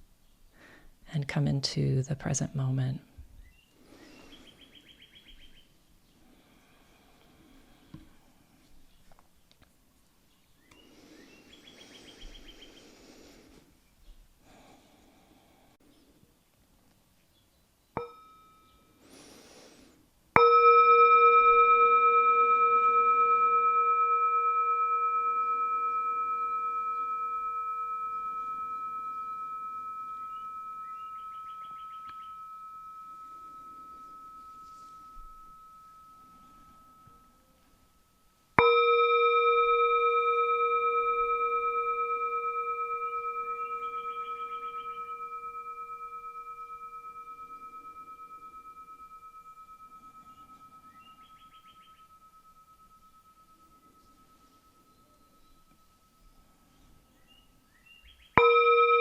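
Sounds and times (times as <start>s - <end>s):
meditation bell ringing: 18.0s - 19.4s, 20.3s - 59.0s.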